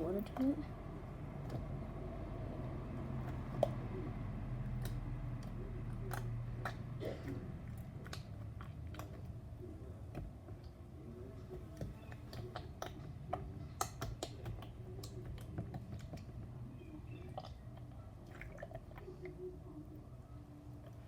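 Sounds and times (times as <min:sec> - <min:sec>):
steady low hum: 0:00.0 - 0:21.0
slime squelching and clicking: 0:02.8 - 0:07.0, 0:07.7 - 0:19.4.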